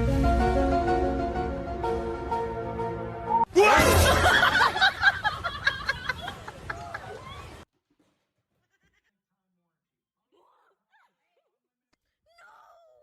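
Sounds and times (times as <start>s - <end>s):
background music sustained notes: 0.0s - 4.4s.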